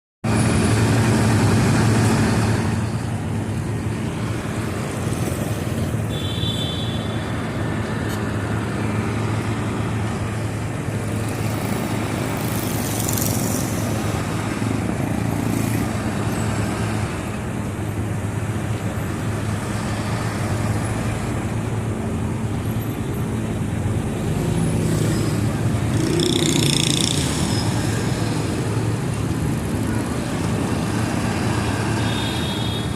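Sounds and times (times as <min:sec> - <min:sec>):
road traffic engines droning: 0:00.2 - 0:32.9
vehicle passing: 0:24.2 - 0:32.0.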